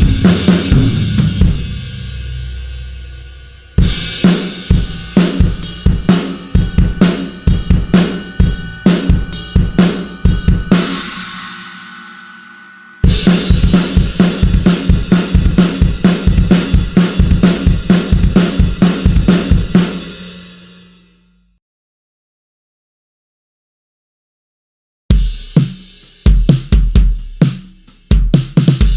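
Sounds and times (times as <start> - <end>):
drum kit beat: 0.0 - 12.4, 13.0 - 21.1, 25.1 - 28.9
ringing cymbal: 0.0 - 21.2.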